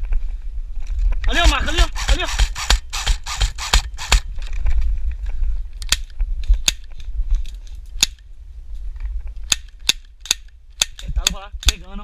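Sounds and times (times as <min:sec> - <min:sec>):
steady low rumble: 0:00.0 - 0:12.0
airsoft gun shots: 0:01.3 - 0:04.3.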